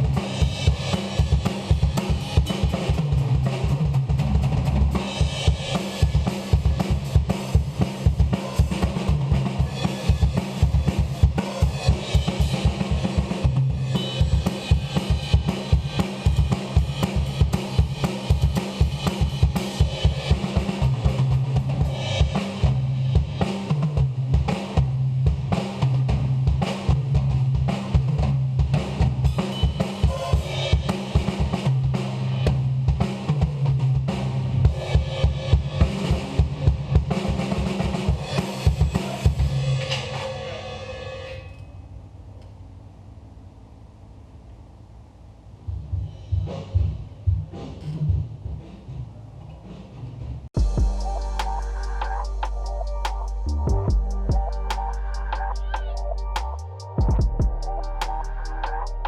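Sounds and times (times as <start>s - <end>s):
drum kit playing: 0.0s - 40.6s, 49.6s - 59.0s
ringing cymbals: 29.3s - 31.6s, 38.1s - 42.0s, 50.6s - 59.0s.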